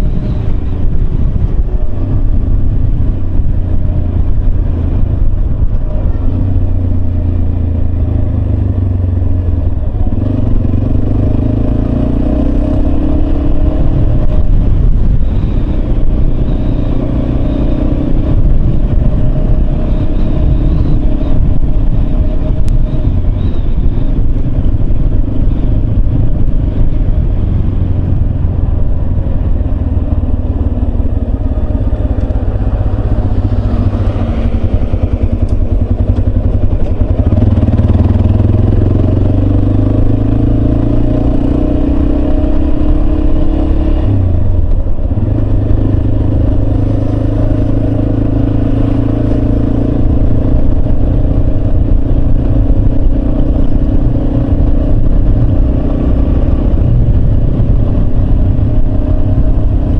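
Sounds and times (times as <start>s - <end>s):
motorcycle engine running: 0.0s - 59.9s.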